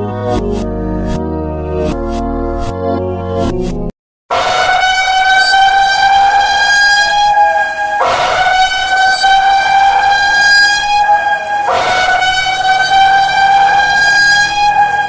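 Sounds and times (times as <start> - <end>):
harsh alarm horn blasts: 4.3 - 15.0.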